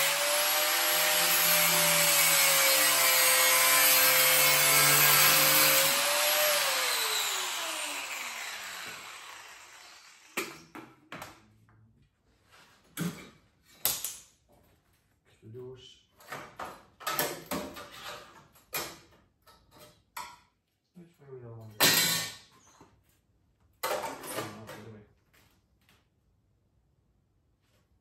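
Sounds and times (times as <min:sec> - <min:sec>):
angle grinder on sheet steel: 0:00.0 - 0:10.6.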